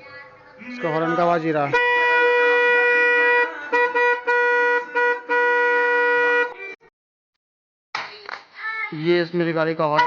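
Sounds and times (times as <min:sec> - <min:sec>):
motorcycle horn: 0:01.7 - 0:06.7.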